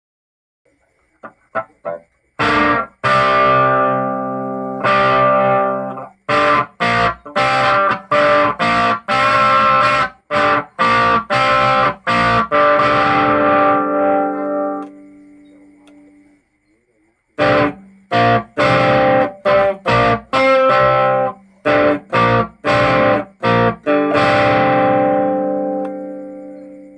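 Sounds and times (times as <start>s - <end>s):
distorted electric guitar: 1.2s - 16.1s, 17.4s - 26.9s.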